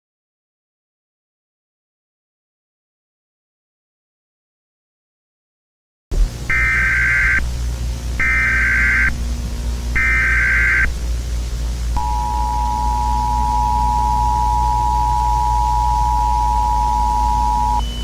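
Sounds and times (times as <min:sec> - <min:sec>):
low steady hum: 0:06.2 - 0:18.0
two-tone attention signal: 0:06.5 - 0:07.4, 0:12.0 - 0:18.0
buzzy data burst warble: 0:06.5 - 0:07.6, 0:08.2 - 0:11.2, 0:12.0 - 0:18.0.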